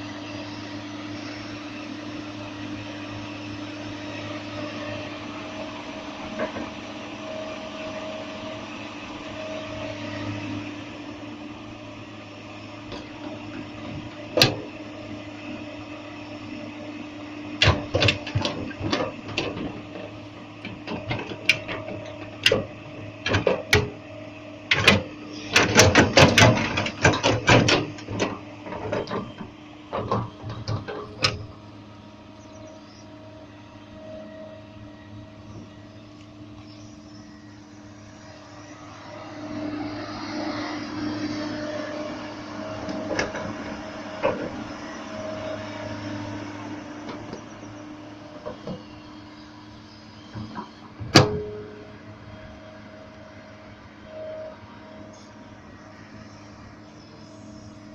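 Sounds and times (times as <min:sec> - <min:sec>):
excavator engine humming: 0:00.0 - 0:57.9
sharp metal knocks and clanks: 0:24.7 - 0:31.5.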